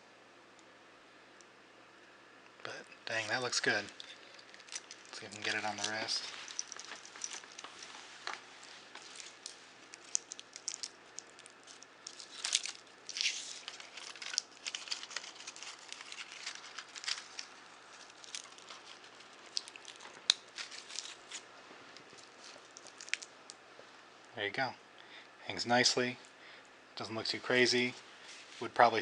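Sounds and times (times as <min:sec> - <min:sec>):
watch bracelet rustling: 0:03.2 - 0:23.6.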